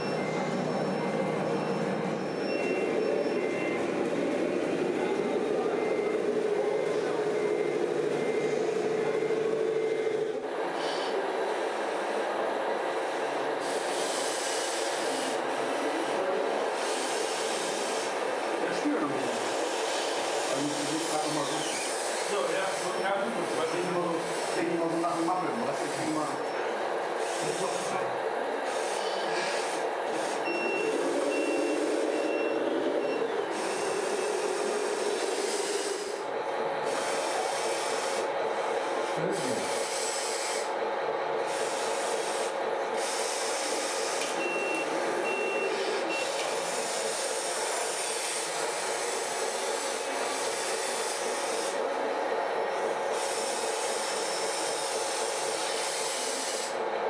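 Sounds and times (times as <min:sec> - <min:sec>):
reversing beeps: 0:00.0 - 0:04.0, 0:30.4 - 0:34.4, 0:44.4 - 0:46.3.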